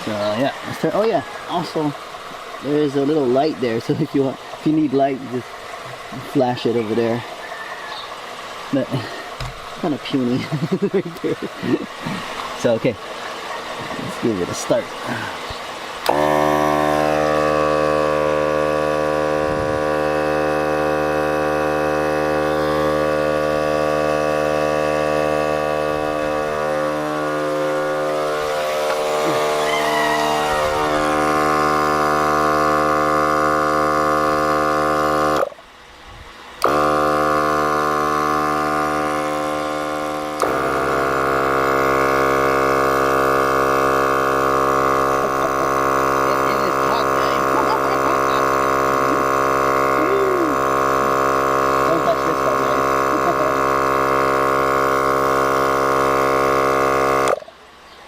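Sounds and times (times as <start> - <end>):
air compressor humming: 0.0 - 7.4, 8.1 - 35.6, 36.6 - 57.4.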